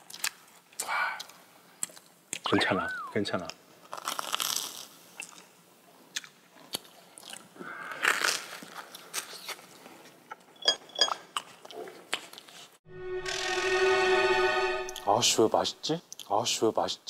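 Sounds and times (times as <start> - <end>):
crunchy bites and chewing: 3.8 - 5.5, 6.1 - 9.7.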